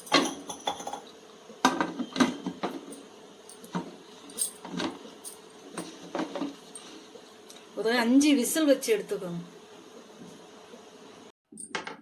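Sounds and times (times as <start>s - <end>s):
metal cookware clinking and knocking: 0.0s - 1.1s.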